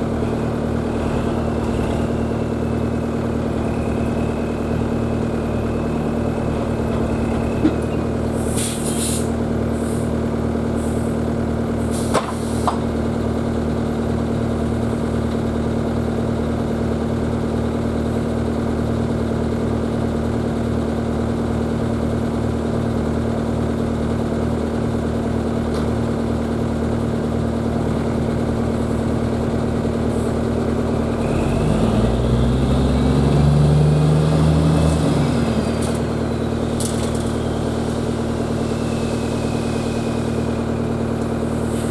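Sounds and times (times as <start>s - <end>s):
diesel truck engine running: 0.0s - 41.9s
short air hisses: 8.4s - 10.1s, 11.9s - 12.7s, 36.8s - 41.9s.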